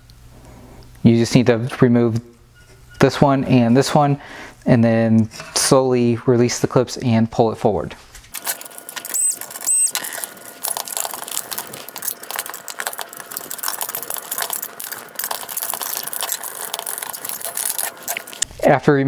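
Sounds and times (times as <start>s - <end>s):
high squeak: 2.5s - 3.1s, 9.0s - 10.3s.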